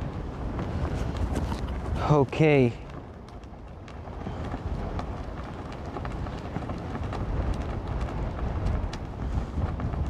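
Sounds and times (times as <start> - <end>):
wind rumbling on microphone: 0.0 - 10.0.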